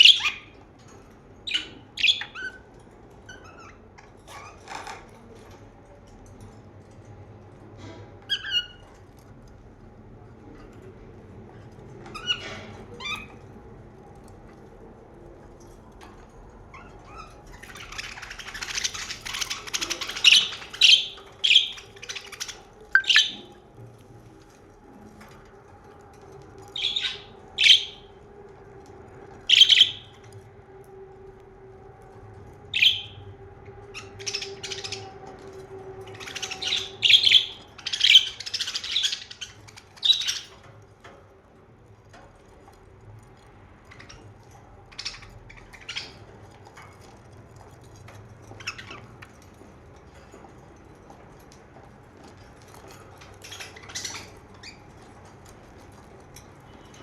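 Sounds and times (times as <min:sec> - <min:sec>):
budgerigars chirping: 0:00.0 - 0:00.6, 0:01.5 - 0:02.6, 0:16.8 - 0:23.6, 0:26.8 - 0:28.1, 0:29.5 - 0:30.1, 0:32.7 - 0:33.2, 0:34.0 - 0:35.1, 0:36.2 - 0:40.6, 0:44.9 - 0:46.6, 0:53.4 - 0:54.8.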